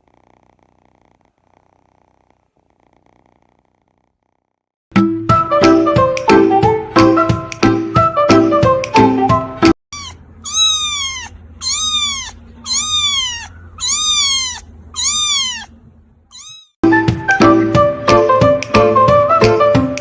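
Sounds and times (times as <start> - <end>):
instrumental music: 4.9 - 9.8, 16.8 - 20.0
cat meowing: 9.9 - 16.8.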